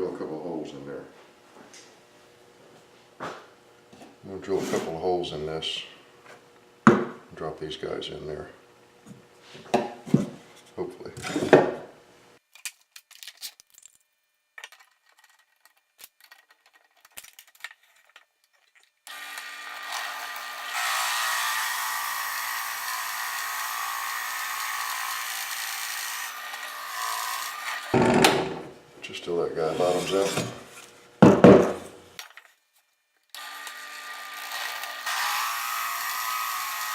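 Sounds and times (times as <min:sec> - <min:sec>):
drill bit boring into wood: 0:19.1 - 0:28.3, 0:33.4 - 0:36.9
drill press motor: 0:19.1 - 0:28.4, 0:33.4 - 0:36.9.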